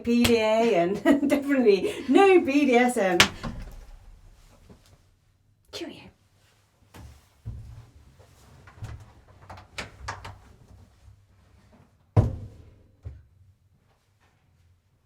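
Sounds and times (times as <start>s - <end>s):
door handling clicks and knocks: 3.2s - 4.2s
door banging: 3.2s - 4.8s.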